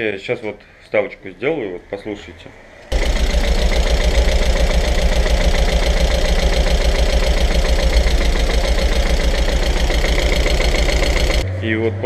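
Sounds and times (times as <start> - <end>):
car engine knocking: 2.9 - 11.4.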